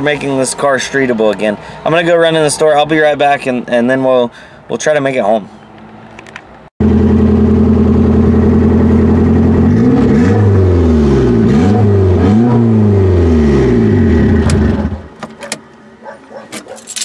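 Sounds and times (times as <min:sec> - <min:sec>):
car engine running loud: 0:06.8 - 0:15.1.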